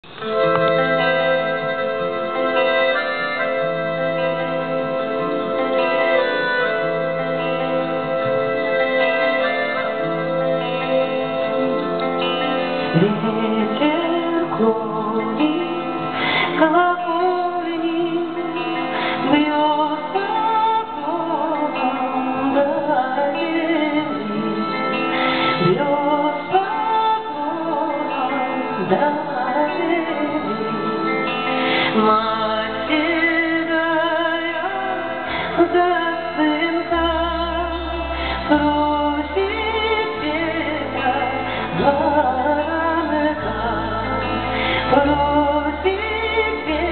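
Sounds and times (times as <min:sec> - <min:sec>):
woman singing with band: 0:12.1 - 0:46.9.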